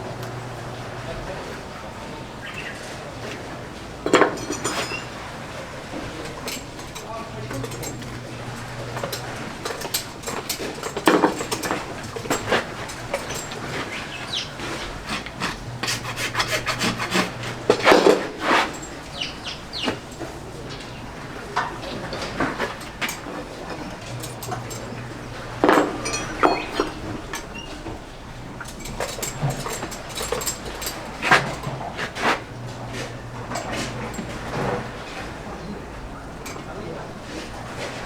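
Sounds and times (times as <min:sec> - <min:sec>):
tools rasping a horse's hoof: 0:04.3 - 0:05.1, 0:06.5 - 0:20.2, 0:22.6 - 0:27.7, 0:28.8 - 0:34.3.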